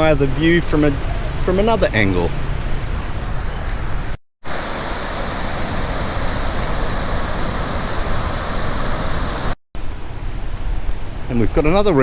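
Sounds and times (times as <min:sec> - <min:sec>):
waterfall rushing over rock: 0:04.4 - 0:09.6.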